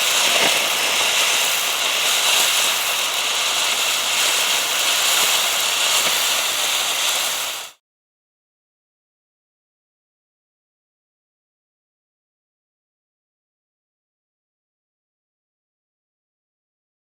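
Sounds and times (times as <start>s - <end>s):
firework fountain hissing and crackling: 0.0s - 7.8s.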